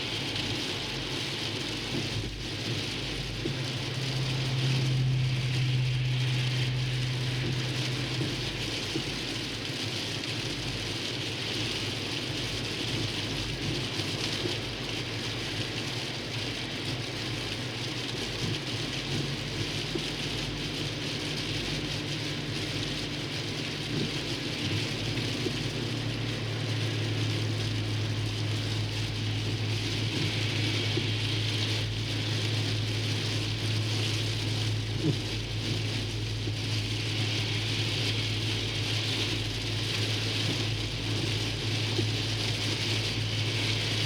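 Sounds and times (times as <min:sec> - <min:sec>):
low engine drone: 0:00.0 - 0:09.4, 0:19.2 - 0:44.0
tyres hissing through wet slush: 0:24.1 - 0:44.0.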